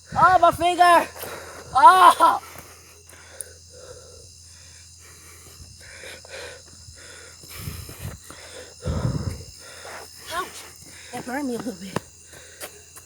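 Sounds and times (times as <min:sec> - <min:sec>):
crickets chirring: 0:00.0 - 0:13.0
soft breathy noise: 0:02.6 - 0:11.2.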